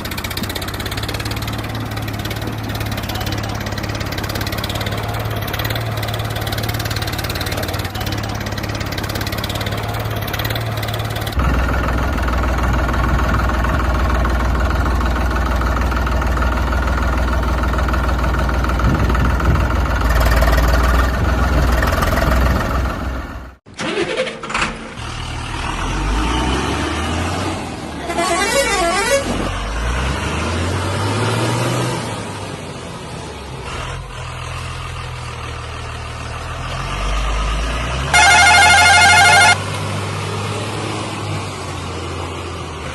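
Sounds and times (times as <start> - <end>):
heavy diesel engines revving: 0.0 - 42.9
vehicle horn: 28.0 - 29.5, 38.1 - 39.6.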